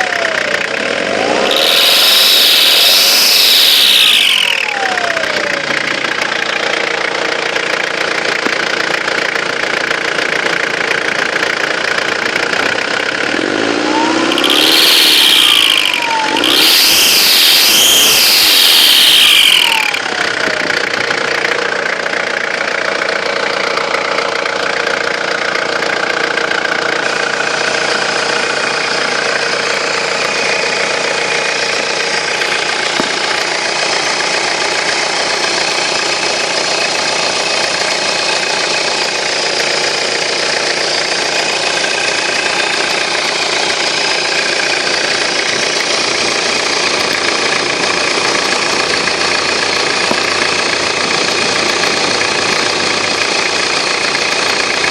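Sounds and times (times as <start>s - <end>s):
turbo whistle: 0.0s - 7.0s, 13.1s - 20.6s
car engine idling: 0.0s - 54.9s.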